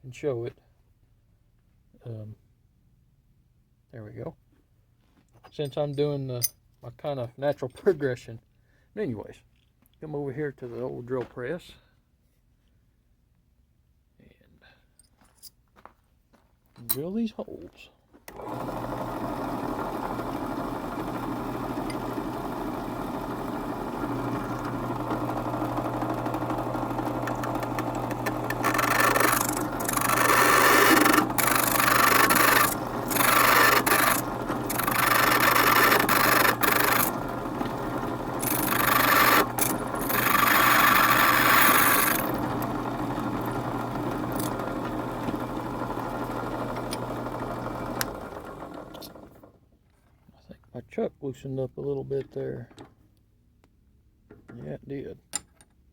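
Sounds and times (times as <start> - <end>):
drill press motor running: 18.3 - 49.5
drill bit grating on steel: 19.7 - 47.2.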